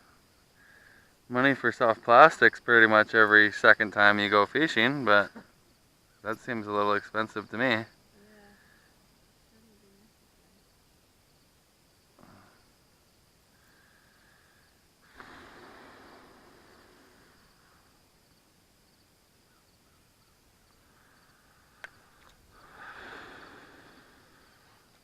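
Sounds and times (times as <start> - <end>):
rushes of noise: 15.0 - 18.4, 20.9 - 24.9.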